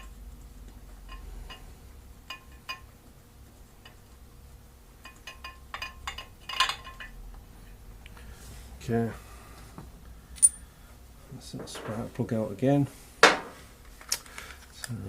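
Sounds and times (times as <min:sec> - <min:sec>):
tool clatter: 0:05.0 - 0:07.2
metallic clinks of hand tools: 0:10.4 - 0:10.6.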